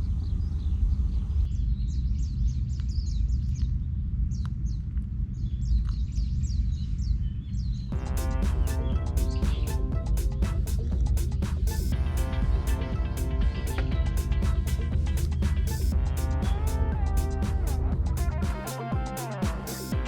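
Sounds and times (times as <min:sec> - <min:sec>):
steady low rumble: 0:00.0 - 0:20.0
music: 0:07.9 - 0:20.0.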